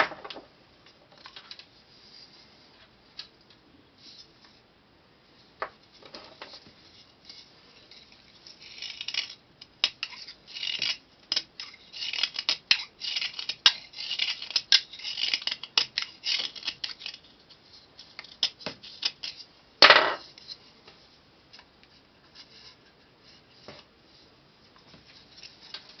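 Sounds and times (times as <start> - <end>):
knife shaving clay: 6.6 - 19.5.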